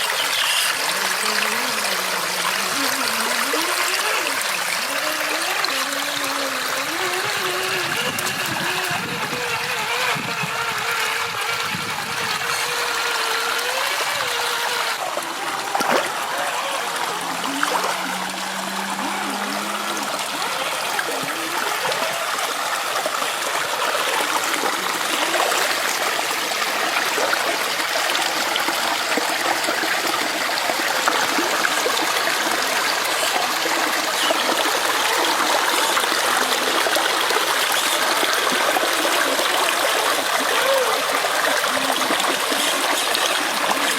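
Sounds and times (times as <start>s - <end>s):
shallow river water trickling: 0.0s - 43.9s.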